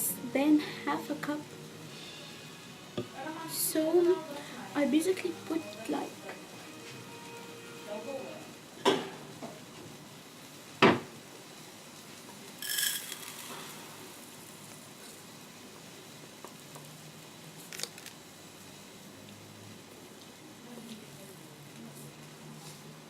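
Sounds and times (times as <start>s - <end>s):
metal or glass clinking: 12.6s - 13.4s.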